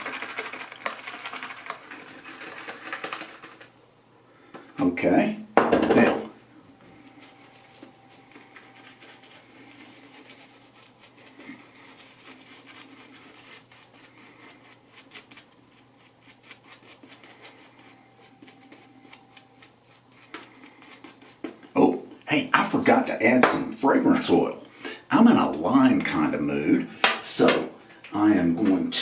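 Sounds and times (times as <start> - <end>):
shaving brush lathering soap: 0.0 - 3.7, 7.4 - 21.7
low steady hum: 0.0 - 29.0.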